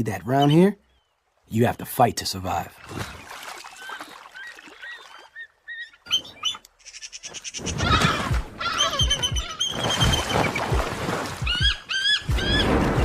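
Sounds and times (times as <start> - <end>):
eagles calling: 3.7 - 12.8.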